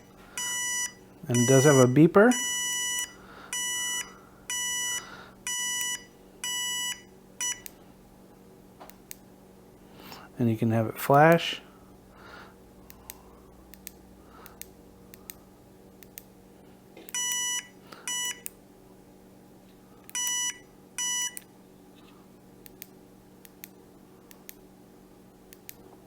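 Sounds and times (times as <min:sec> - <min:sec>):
short electronic beeps: 0:00.4 - 0:07.6.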